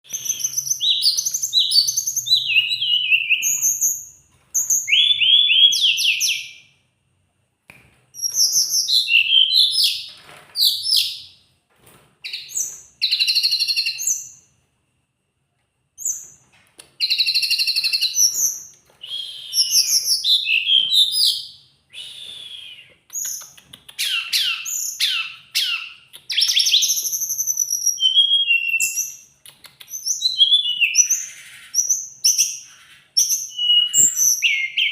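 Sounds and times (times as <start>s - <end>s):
songbird singing: 0.0s - 6.7s, 8.2s - 10.0s, 17.0s - 29.3s.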